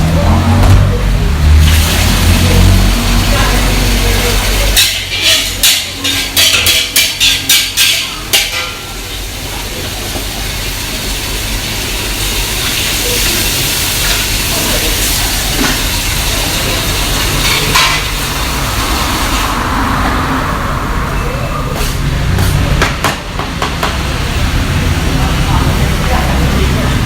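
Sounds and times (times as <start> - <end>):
food sizzling in wok: 1.3 - 21.2
wok clank: 4.3 - 9.1, 17.3 - 20.2
metal spatula scraping wok: 4.4 - 8.9.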